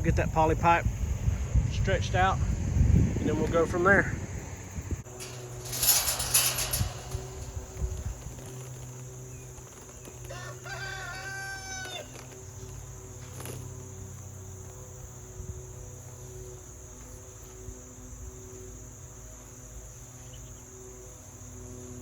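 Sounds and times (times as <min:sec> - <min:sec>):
rooster crowing: 0:10.3 - 0:12.2.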